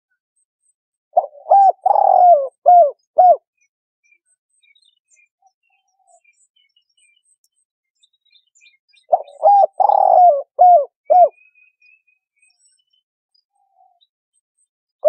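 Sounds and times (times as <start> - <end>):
dove cooing: 1.2 - 3.4, 9.1 - 11.4.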